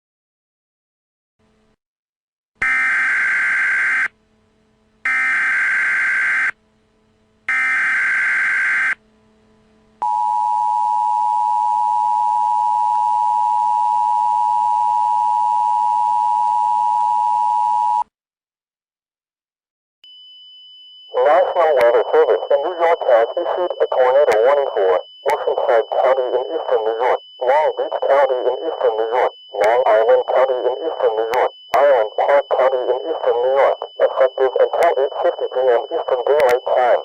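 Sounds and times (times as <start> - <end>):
steady attention tone: 20.4 - 37.0.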